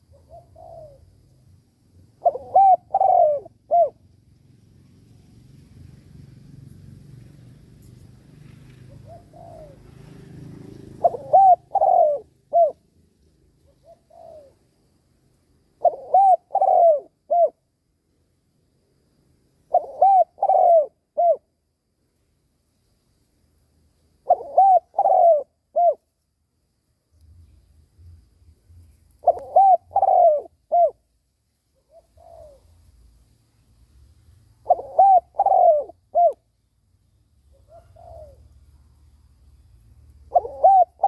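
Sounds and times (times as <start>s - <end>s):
dove cooing: 0.0s - 1.3s, 2.0s - 4.2s, 8.7s - 12.9s, 13.6s - 14.8s, 15.8s - 17.6s, 19.7s - 21.5s, 24.2s - 26.1s, 29.2s - 31.0s, 31.8s - 33.0s, 34.6s - 36.5s, 37.5s - 38.6s, 40.2s - 41.0s.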